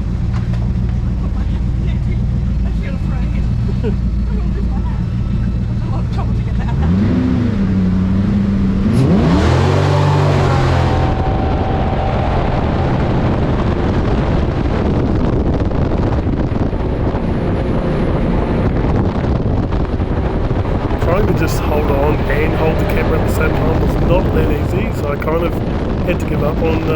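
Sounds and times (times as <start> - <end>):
boat engine revving: 0.0 - 26.9
rush of wind and water: 9.0 - 26.9.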